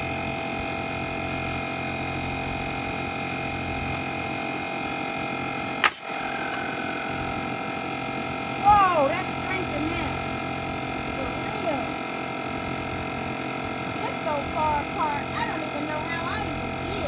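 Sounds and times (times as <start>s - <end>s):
air compressor humming: 0.0s - 17.0s
pneumatic nail gun shot: 5.8s - 6.1s.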